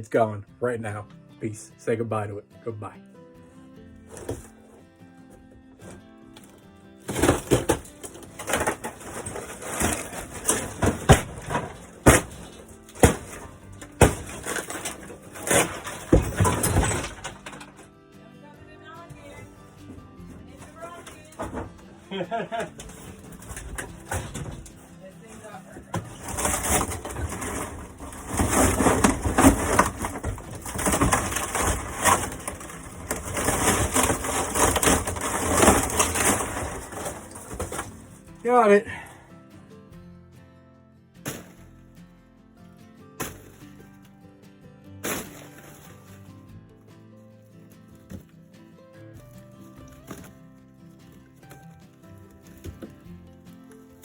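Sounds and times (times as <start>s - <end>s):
panels ripped and pried loose: 4.0s - 4.8s, 5.8s - 17.9s, 19.1s - 38.6s, 45.0s - 46.3s, 49.3s - 54.0s
wood boards crunching and cracking: 4.0s - 4.8s, 5.8s - 17.9s, 19.1s - 39.1s, 49.2s - 54.0s
scraping and rustling material: 7.1s - 17.8s, 19.1s - 38.4s.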